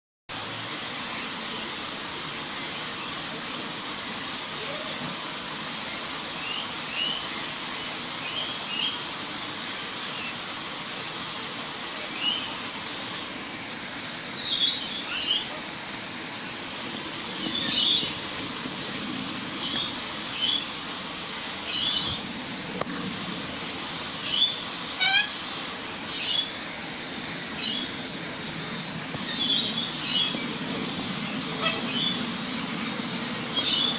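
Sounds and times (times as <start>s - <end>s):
high-pitched hiss: 0.3s - 33.9s
cockatoo chirping calls: 24.2s - 25.4s, 29.2s - 33.9s.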